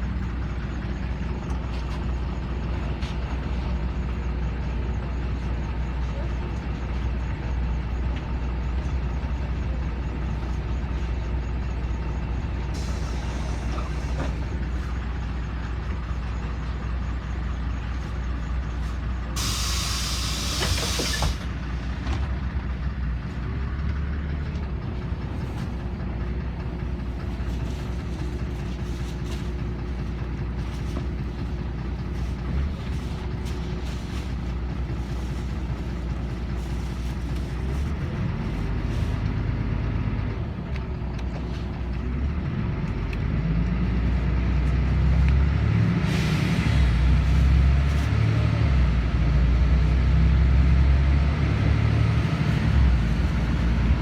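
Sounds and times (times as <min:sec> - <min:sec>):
bus engine drone: 0:00.0 - 0:54.0
compressed air hissing: 0:12.8 - 0:14.4, 0:19.4 - 0:21.5.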